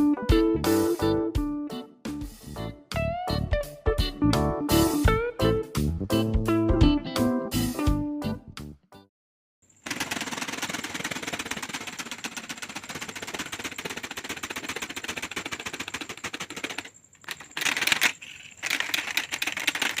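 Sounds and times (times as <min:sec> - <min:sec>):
toy ornithopter wings flapping: 0:09.8 - 0:20.0.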